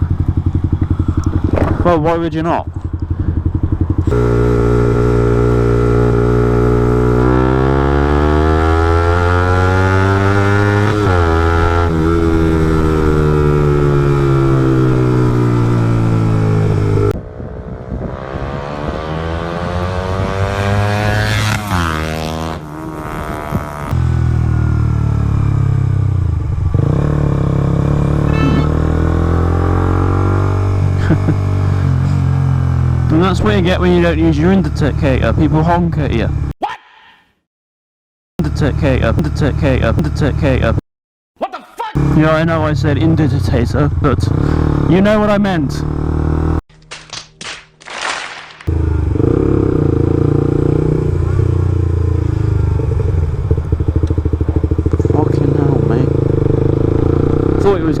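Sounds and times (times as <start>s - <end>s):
motorcycle engine idling and revving: 0.0s - 36.5s, 38.4s - 40.8s, 42.0s - 46.6s, 48.6s - 58.0s
brief high tone: 28.3s - 28.8s.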